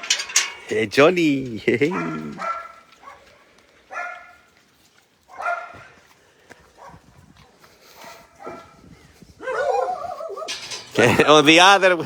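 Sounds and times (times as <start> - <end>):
dogs barking: 1.7 - 4.5, 5.3 - 5.9, 6.8 - 7.0, 7.9 - 8.8, 9.4 - 10.8.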